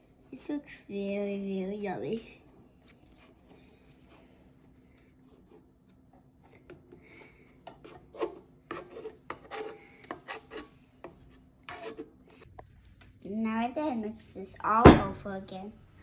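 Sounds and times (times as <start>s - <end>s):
utensil scraping a mixing bowl: 1.1s - 12.4s.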